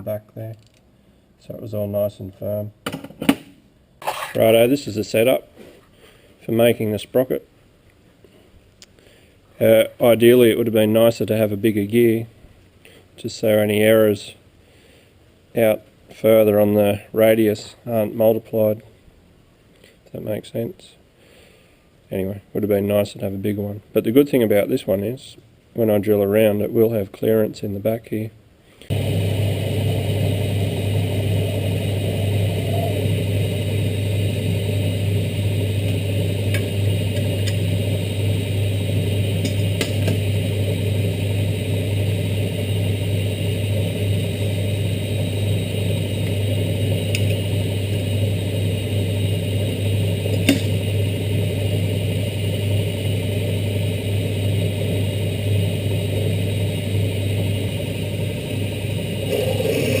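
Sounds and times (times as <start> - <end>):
metal lathe motor humming: 28.9 - 60.0.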